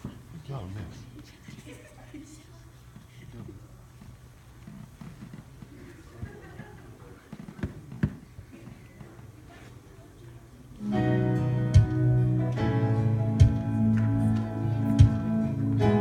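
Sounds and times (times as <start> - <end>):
acoustic guitar music: 10.8 - 16.0.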